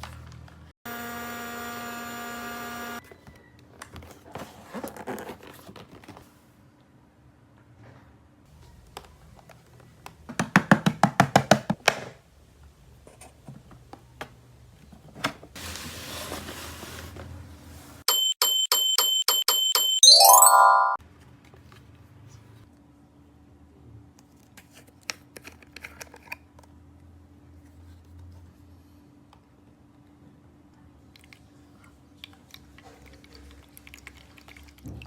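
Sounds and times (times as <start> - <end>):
toy beeps and chirpy jingle: 18.1 - 21.0.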